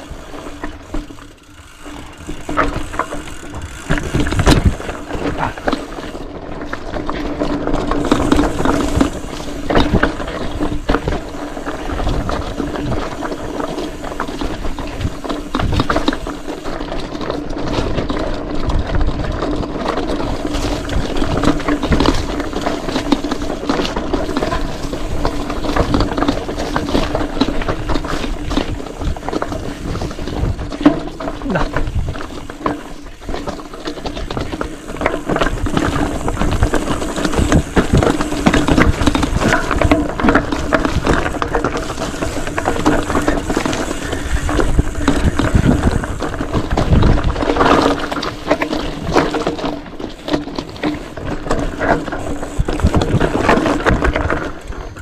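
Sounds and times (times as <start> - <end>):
freewheel ratcheting buzz: 0.0 - 6.9, 7.6 - 18.3
bike chain and frame rattling: 0.0 - 55.0.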